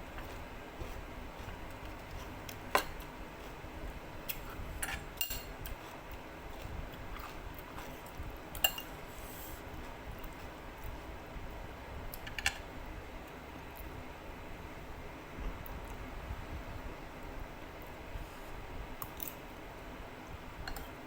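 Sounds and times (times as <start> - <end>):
cutlery clinking against a bowl: 2.1 - 3.1, 4.3 - 5.9, 8.0 - 9.0.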